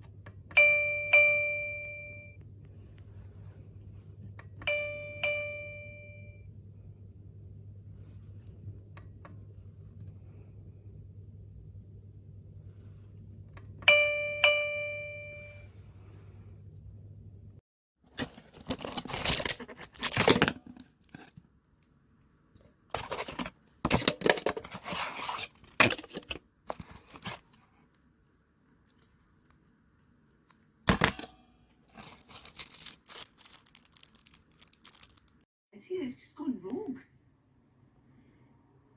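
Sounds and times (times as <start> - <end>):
two-note doorbell chime: 0.6 - 2.4, 4.7 - 6.5, 13.9 - 15.7
low hum: 15.0 - 17.6
handling noise: 18.1 - 21.5, 22.6 - 28.0, 28.7 - 35.4.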